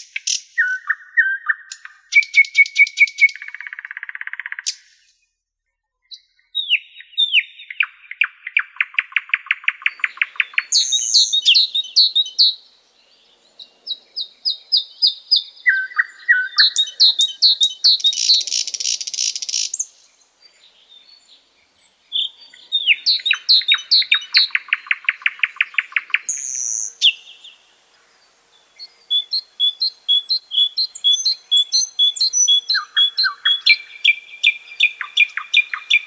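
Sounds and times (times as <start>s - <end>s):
songbird song with fast trill: 6.1s - 36.0s
birds chirping: 9.8s - 36.0s.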